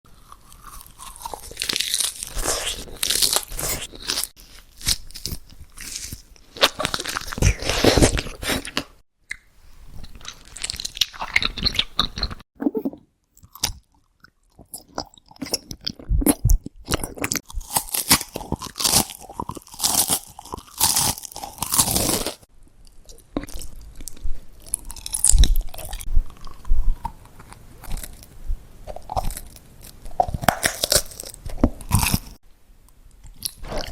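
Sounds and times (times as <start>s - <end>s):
crisp food crunching: 0.1s - 8.9s, 10.0s - 12.4s, 13.4s - 32.4s.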